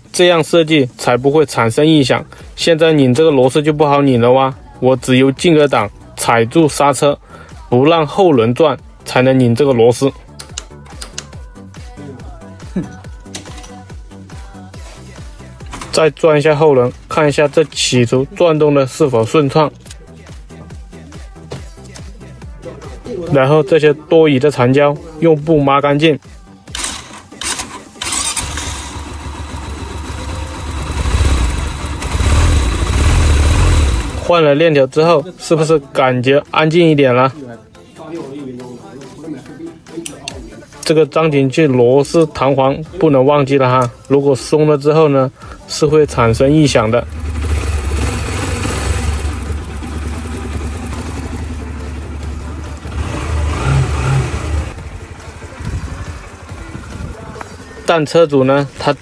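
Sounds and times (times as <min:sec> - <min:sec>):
motorcycle engine starting and rumbling: 0:26.7 - 0:34.3, 0:46.1 - 0:57.6.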